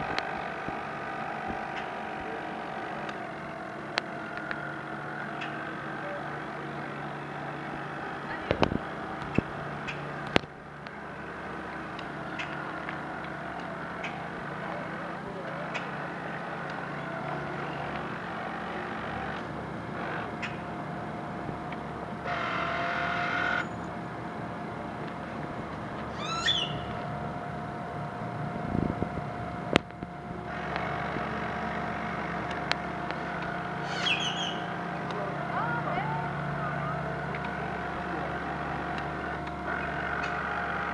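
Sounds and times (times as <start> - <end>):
model boat motor hum: 0.0 - 40.9
short bird chirp: 26.2 - 26.9, 33.9 - 34.6.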